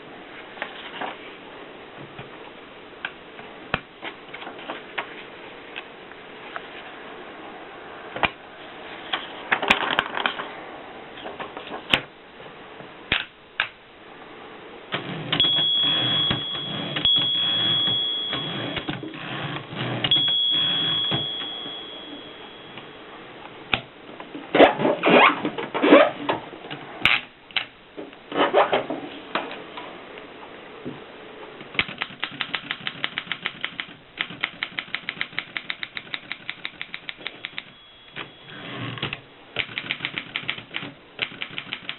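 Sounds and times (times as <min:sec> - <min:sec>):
typewriter mechanical noise: 0:14.9 - 0:21.3, 0:31.7 - 0:41.9
thin high ring: 0:15.4 - 0:23.5, 0:37.2 - 0:39.0
rapid typewriter clattering: 0:31.8 - 0:37.7, 0:39.6 - 0:41.9
typewriter key strikes: 0:31.8 - 0:37.7, 0:39.6 - 0:41.9.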